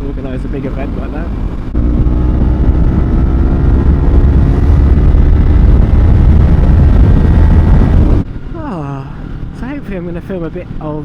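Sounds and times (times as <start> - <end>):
motorcycle engine running: 0.0 - 8.2
heavy wind noise: 0.0 - 11.0
road rumble: 0.0 - 11.0.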